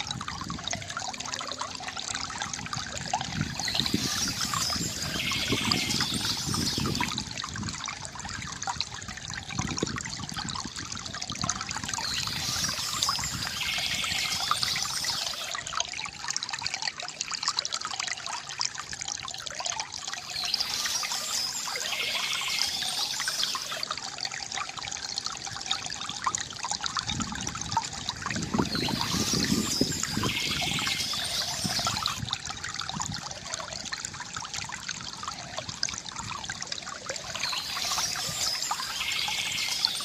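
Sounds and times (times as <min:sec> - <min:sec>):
river water trickling: 0:00.0 - 0:40.0
birds chirping: 0:03.5 - 0:07.1, 0:11.9 - 0:15.6, 0:20.2 - 0:23.8, 0:28.5 - 0:32.2, 0:37.2 - 0:40.0.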